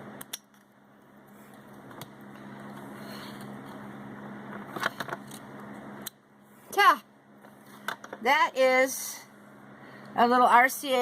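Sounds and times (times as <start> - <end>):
low mechanical hum: 0.0 - 11.0
small parts clicking and snapping: 0.2 - 0.7.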